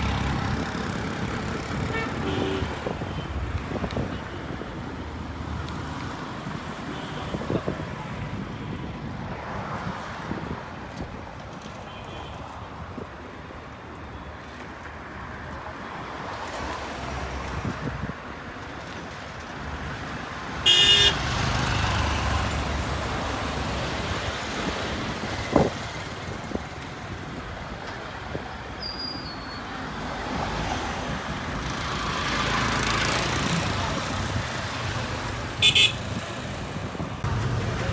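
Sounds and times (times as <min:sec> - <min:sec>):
road traffic noise: 0:00.0 - 0:37.9
vehicle horn toot: 0:01.8 - 0:03.3, 0:20.6 - 0:21.3, 0:35.6 - 0:36.1.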